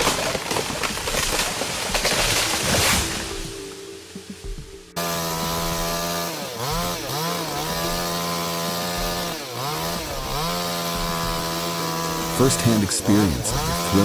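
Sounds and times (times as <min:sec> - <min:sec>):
chainsaw running at high revs: 0:05.0 - 0:14.0.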